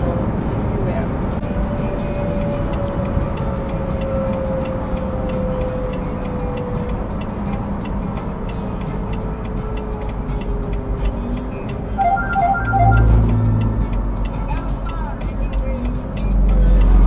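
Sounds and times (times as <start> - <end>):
road noise inside vehicle: 0.0 - 17.0
electronic beeps: 12.0 - 13.8.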